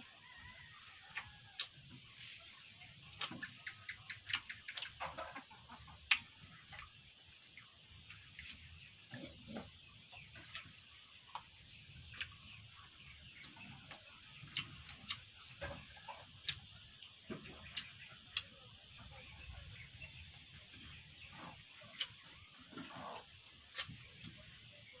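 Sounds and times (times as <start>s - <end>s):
chewing: 13.7s - 18.5s.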